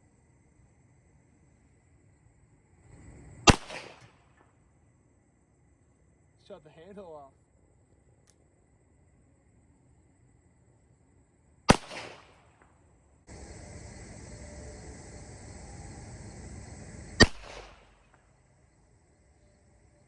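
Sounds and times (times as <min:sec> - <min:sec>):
steady hiss: 0:00.0 - 0:20.0
revolver shots with echo: 0:03.5 - 0:04.1, 0:11.7 - 0:12.4, 0:17.2 - 0:18.0.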